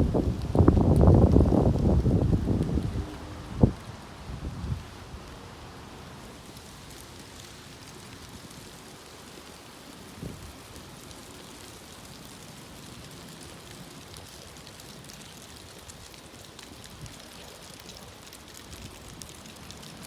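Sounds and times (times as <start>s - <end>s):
wind blowing: 0.0s - 5.3s.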